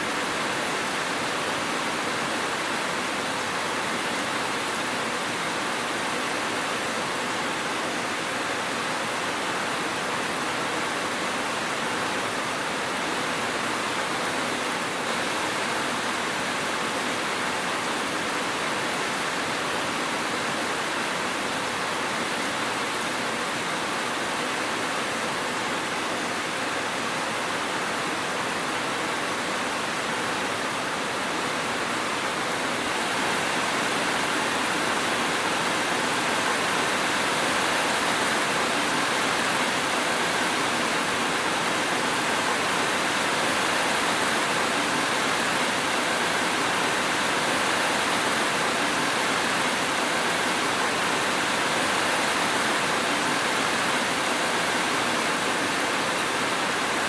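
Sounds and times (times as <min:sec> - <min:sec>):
dense rainfall hiss: 0:00.0 - 0:57.0.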